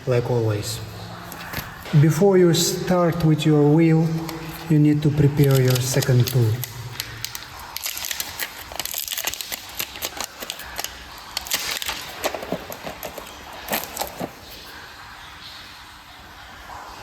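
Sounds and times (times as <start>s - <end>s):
tools clicking and rustling: 7.3s - 14.6s.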